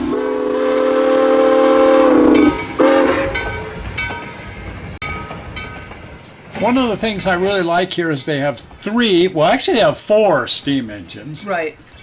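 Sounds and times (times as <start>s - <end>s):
locomotive horn blasts: 0.0s - 3.5s.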